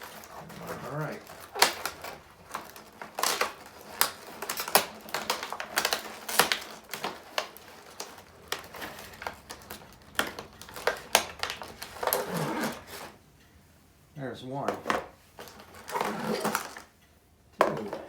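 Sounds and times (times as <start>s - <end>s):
plastic parts clicking together: 0.0s - 13.1s.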